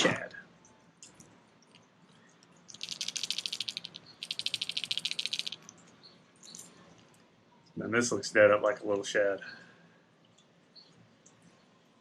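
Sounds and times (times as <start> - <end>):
beads rattling in lure: 1.0 - 7.1.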